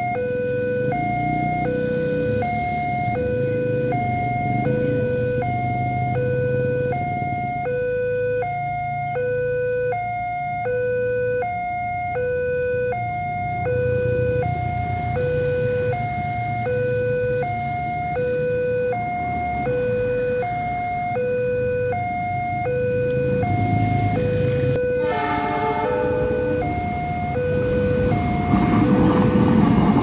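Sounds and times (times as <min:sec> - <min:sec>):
level crossing two-tone siren: 0:00.0 - 0:30.0
low rumble: 0:25.9 - 0:30.0.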